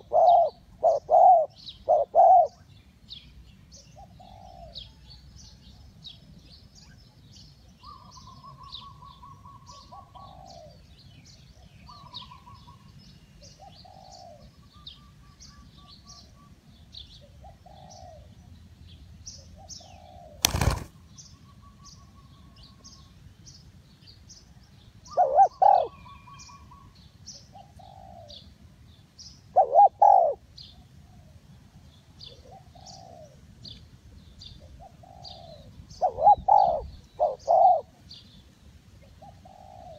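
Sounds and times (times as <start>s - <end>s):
dove cooing: 0.0s - 2.6s, 4.0s - 5.0s, 7.9s - 10.8s, 13.6s - 15.1s, 17.3s - 18.4s, 19.6s - 20.9s, 25.1s - 26.9s, 27.5s - 28.4s, 29.5s - 30.4s, 32.3s - 33.4s, 34.6s - 38.0s, 39.2s - 39.9s
small birds chirping: 0.0s - 39.9s.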